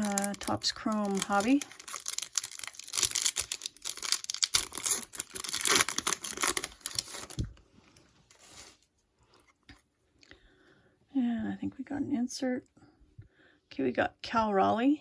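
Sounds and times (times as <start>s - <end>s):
foil wrapper tearing and crinkling: 0.0s - 7.4s.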